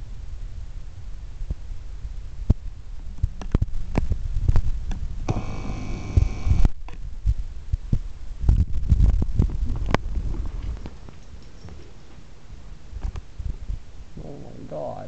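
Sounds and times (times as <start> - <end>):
harsh sustained sound: 5.3 - 6.8.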